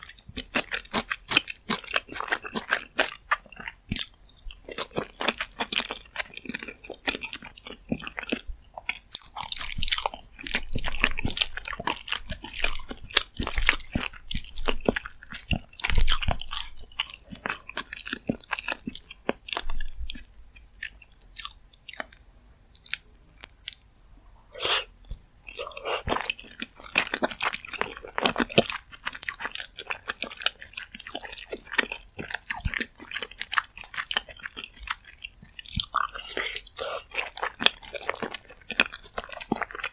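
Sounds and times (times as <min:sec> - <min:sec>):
close chewing and biting: 0:00.0 - 0:22.2, 0:24.6 - 0:39.9.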